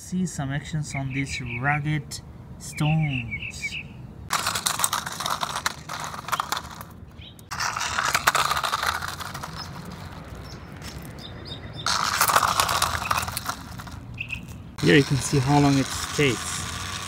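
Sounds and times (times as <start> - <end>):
toy truck wheels crunching on stones: 4.3 - 17.0.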